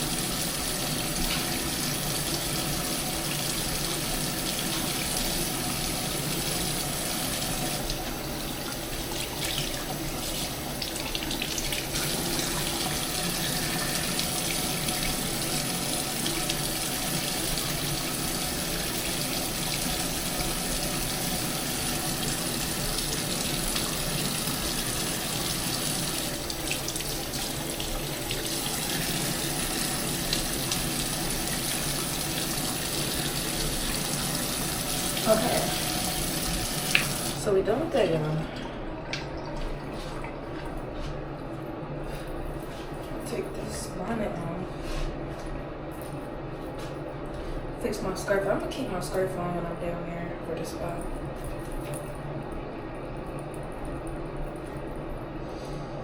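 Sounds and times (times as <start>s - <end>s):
water running from sink tap: 0.0s - 40.9s.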